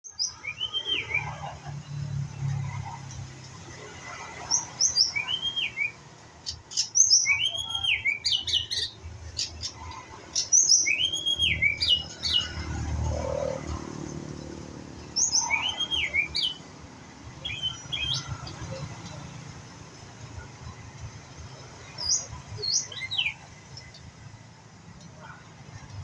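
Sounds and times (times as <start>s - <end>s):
bird singing whistled notes: 0.1s - 1.5s, 4.9s - 6.0s, 6.7s - 9.5s, 10.4s - 12.6s, 15.2s - 16.6s, 17.4s - 18.4s.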